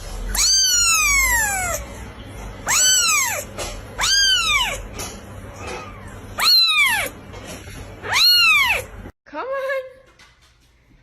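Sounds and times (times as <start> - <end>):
cat meowing: 0.3 - 1.9, 2.6 - 4.9, 5.5 - 7.2, 8.0 - 9.0.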